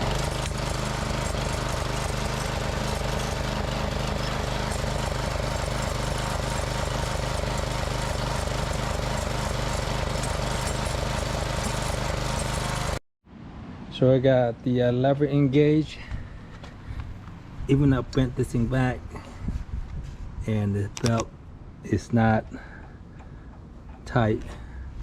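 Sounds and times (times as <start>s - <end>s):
small mower engine running: 0.0s - 13.0s.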